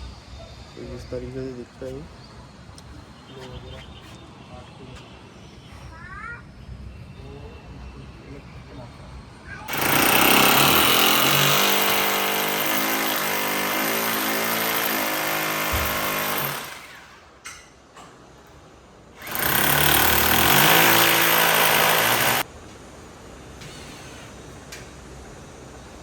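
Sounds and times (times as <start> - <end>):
hammer drill boring into masonry: 9.7 - 17.3, 19.2 - 22.4.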